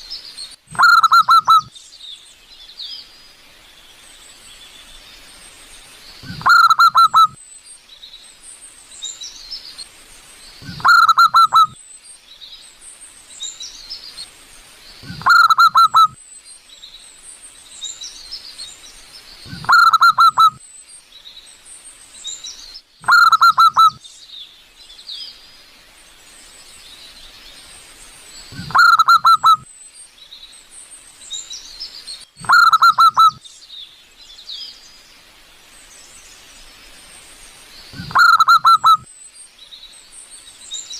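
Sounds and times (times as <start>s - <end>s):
faint high-pitched chirping: 0.0s - 40.9s
dove cooing: 0.7s - 1.7s, 6.2s - 7.4s, 10.6s - 11.7s, 15.0s - 16.1s, 19.5s - 20.6s, 23.0s - 24.0s, 28.6s - 29.6s, 32.4s - 33.4s, 38.0s - 39.0s.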